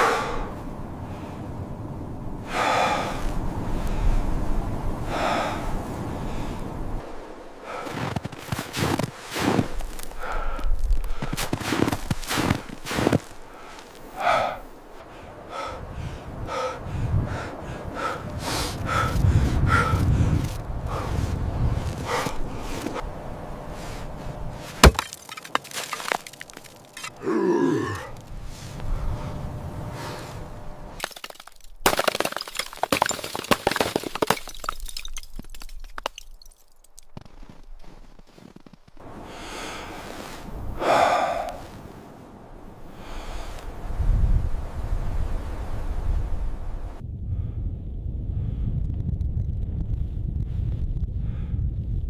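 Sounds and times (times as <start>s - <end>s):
heavy breathing: 0.0s - 1.4s, 2.5s - 4.3s, 5.1s - 6.7s, 7.6s - 8.2s, 9.6s - 11.6s, 12.3s - 23.0s, 27.0s - 30.5s, 39.0s - 41.9s
low rumbling: 12.4s - 25.6s, 26.2s - 31.0s, 42.4s - 52.0s
sharp cracking and breaking: 24.8s - 27.2s.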